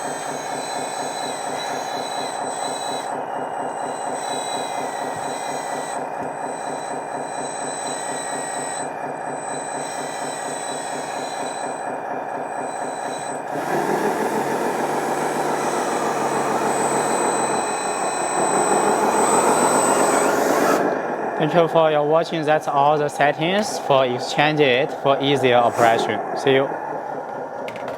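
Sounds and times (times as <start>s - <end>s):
electronic diesel engine sound revving: 0.0s - 27.9s.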